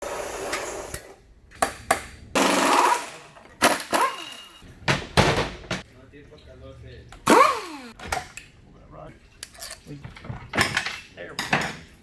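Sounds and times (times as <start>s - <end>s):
metal tools knocking and clanking: 9.4s - 12.0s.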